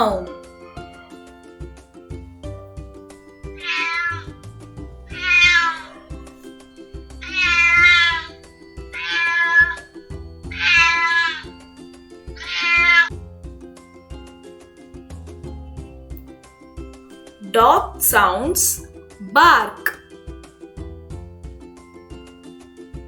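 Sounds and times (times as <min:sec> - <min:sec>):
background music: 0:00.0 - 0:23.0
cat meowing: 0:03.6 - 0:04.4, 0:05.1 - 0:06.6, 0:07.2 - 0:08.3, 0:08.9 - 0:09.9, 0:10.5 - 0:11.5, 0:12.4 - 0:13.1.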